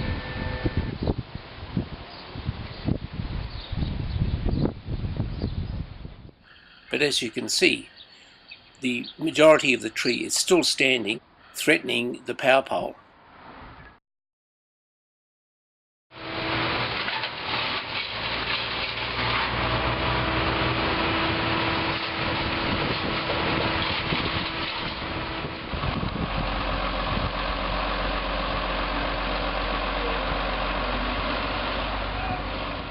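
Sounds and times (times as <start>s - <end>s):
engine running: 16.2s - 32.9s.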